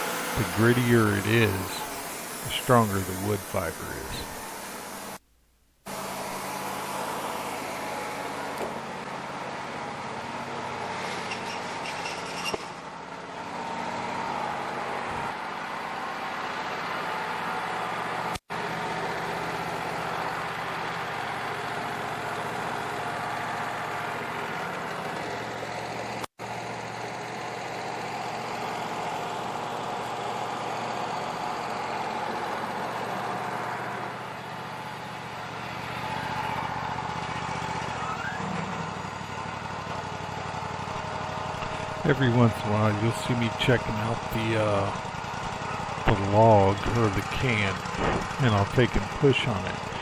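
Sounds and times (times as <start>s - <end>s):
saw blade cutting log: 0.0s - 3.5s
sawmill engine running: 0.0s - 5.2s, 5.9s - 11.8s, 12.8s - 50.0s.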